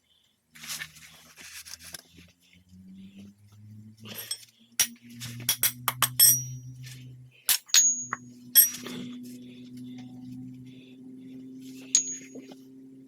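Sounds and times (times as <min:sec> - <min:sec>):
low steady hum: 0:00.0 - 0:13.0
metal clinks and taps: 0:04.2 - 0:06.8, 0:07.5 - 0:09.2, 0:11.9 - 0:12.6.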